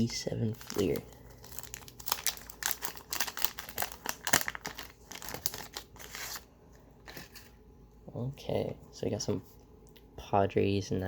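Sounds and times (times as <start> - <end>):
wrapper tearing and crinkling: 0.5 - 6.5.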